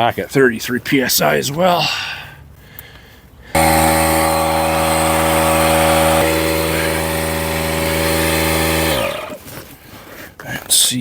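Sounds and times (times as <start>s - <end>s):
air compressor running: 3.6s - 9.5s.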